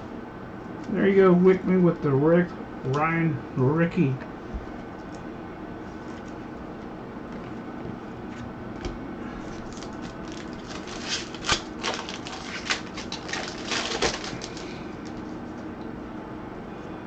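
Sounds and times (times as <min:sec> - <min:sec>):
room hum: 0:00.0 - 0:17.0
cards and wrappers crinkling: 0:09.5 - 0:15.3.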